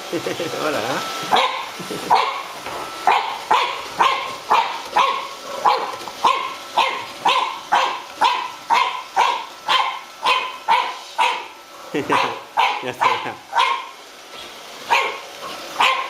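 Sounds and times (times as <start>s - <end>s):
puppy barking: 1.3s - 14.0s, 14.8s - 16.0s.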